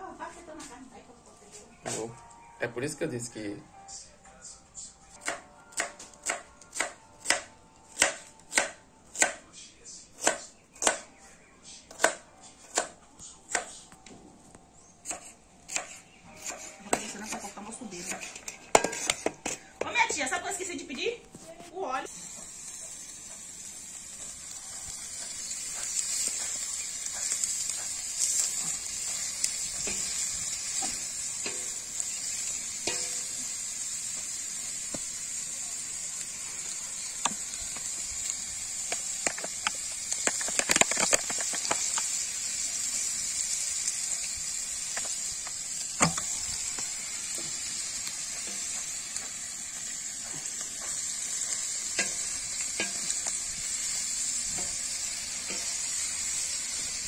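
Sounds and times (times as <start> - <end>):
food sizzling in oil: 15.1 - 57.0
utensil scraping and knocking pan: 16.9 - 20.0.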